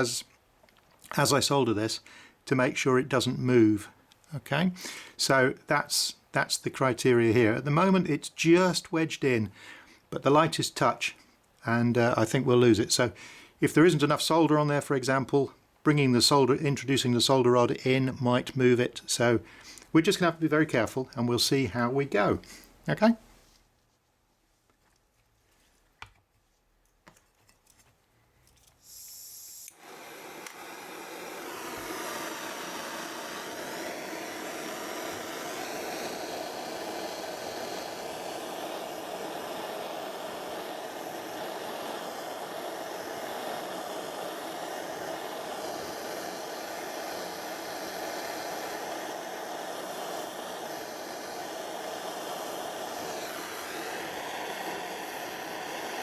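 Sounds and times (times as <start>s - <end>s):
blow lamp flame hissing: 28.8s - 56.0s.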